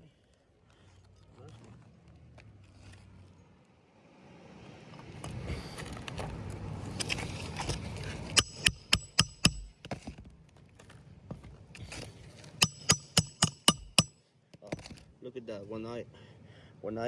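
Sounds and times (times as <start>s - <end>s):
hammer driving nails: 8.4s - 9.7s, 12.6s - 14.1s.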